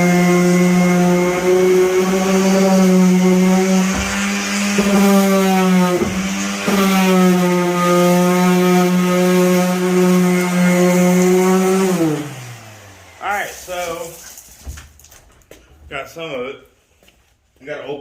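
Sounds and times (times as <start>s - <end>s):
electric sander motor hum: 0.0s - 13.3s.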